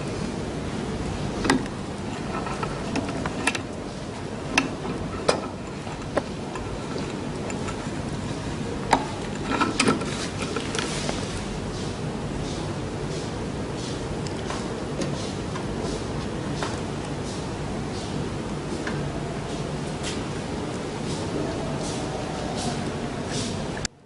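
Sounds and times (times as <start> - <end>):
low background noise: 0.0 - 24.0.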